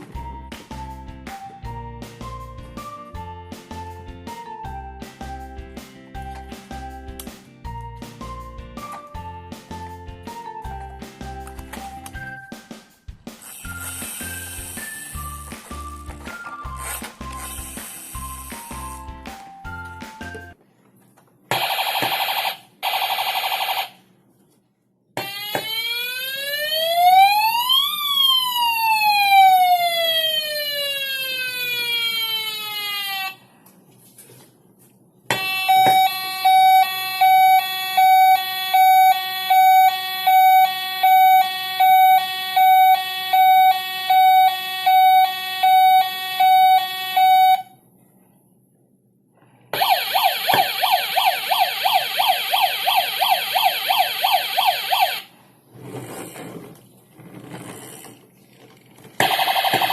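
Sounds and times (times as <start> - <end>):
hi-lo two-tone siren: 21.6 - 24.0, 25.2 - 33.4, 35.3 - 47.8, 49.8 - 55.3, 59.2 - 59.9
toy siren warbling and wailing: 25.2 - 33.4, 35.3 - 47.7, 49.8 - 55.3.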